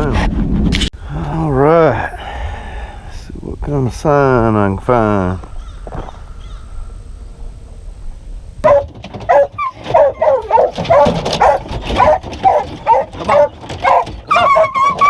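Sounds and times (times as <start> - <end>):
hounds barking: 8.6 - 15.0.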